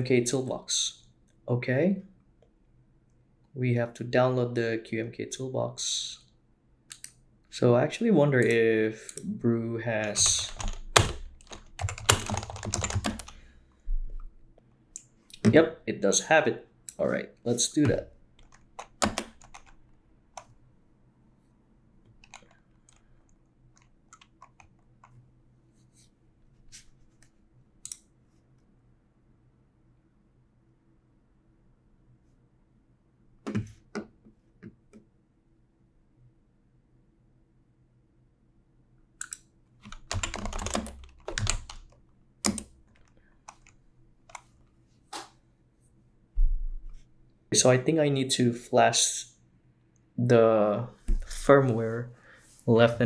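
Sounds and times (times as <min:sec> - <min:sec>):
typing on computer keyboard: 0:10.0 - 0:13.4, 0:17.8 - 0:19.8, 0:22.2 - 0:23.0, 0:23.8 - 0:25.2, 0:39.2 - 0:43.7
computer keyboard key clicks: 0:39.2 - 0:43.7.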